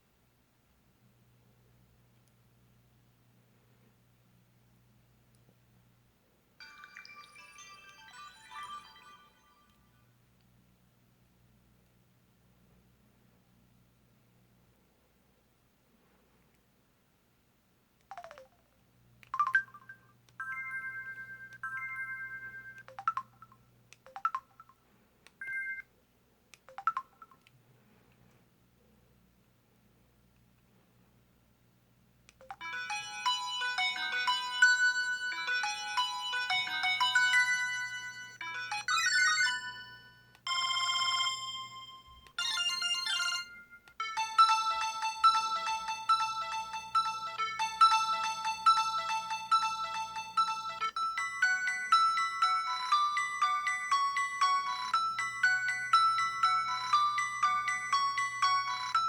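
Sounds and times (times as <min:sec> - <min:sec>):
chime-like electronic blips: 0:06.6 - 0:09.8, 0:37.0 - 0:44.5
phone ringtone melodies: 0:06.6 - 0:09.9, 0:18.1 - 0:18.6, 0:19.4 - 0:24.8, 0:25.4 - 0:25.8, 0:26.7 - 0:27.4, 0:32.4 - 0:59.0
held electronic chords: 0:42.4 - 0:59.0.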